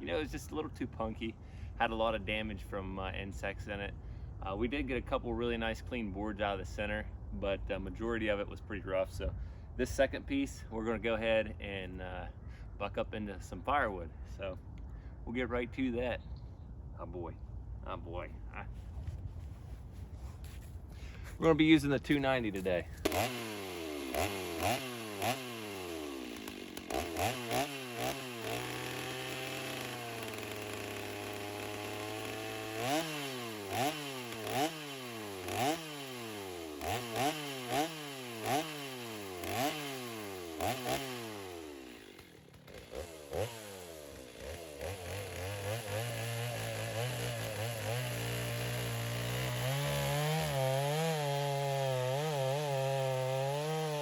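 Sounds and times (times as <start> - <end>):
chainsaw revving: 22.5 - 54.0.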